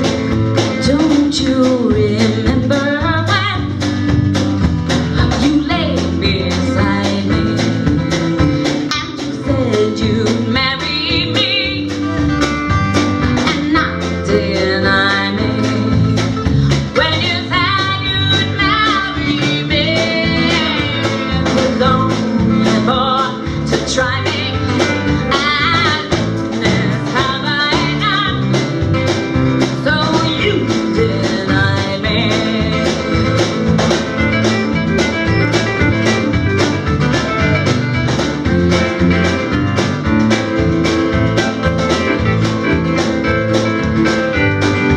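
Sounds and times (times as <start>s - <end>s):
live band music: 0.0s - 44.9s
person singing: 5.1s - 8.0s, 13.4s - 28.6s, 29.8s - 33.6s.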